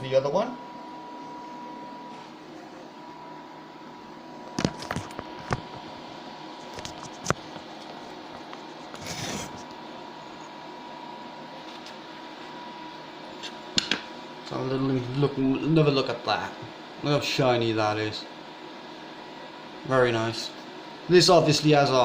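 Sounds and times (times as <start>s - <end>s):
faint hum with thin whine: 0.0s - 22.0s.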